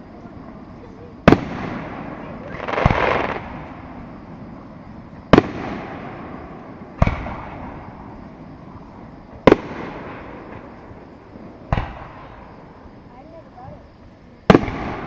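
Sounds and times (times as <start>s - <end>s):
fireworks booming: 0.0s - 13.0s, 14.4s - 15.0s.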